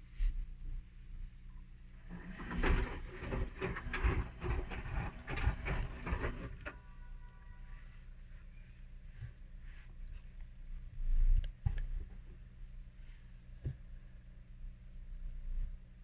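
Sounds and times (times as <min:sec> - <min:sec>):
washing machine motor hum: 0:01.9 - 0:07.3
washing machine drum sloshing: 0:02.0 - 0:06.8.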